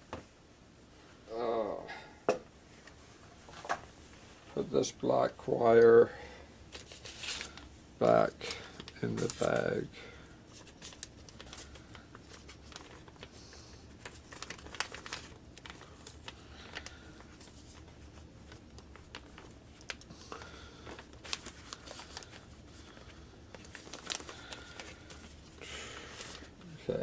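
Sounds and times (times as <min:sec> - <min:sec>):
plastic bag rustling: 0:06.6 - 0:27.0.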